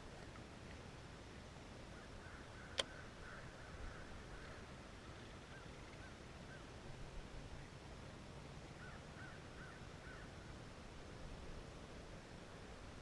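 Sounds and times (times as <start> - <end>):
faint bird calls: 1.9 - 6.8, 8.7 - 10.6.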